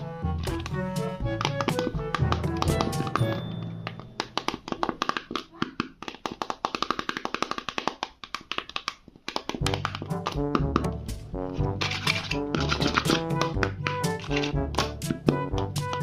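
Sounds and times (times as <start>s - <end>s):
sharp taps: 0.5s - 11.2s
music with bass line: 9.7s - 16.0s.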